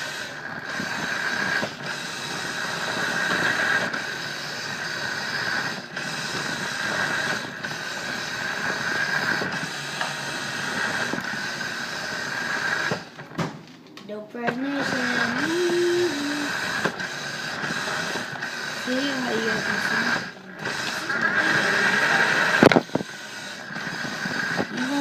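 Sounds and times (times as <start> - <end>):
toy truck motor whirring: 0.0 - 13.3, 14.4 - 25.0.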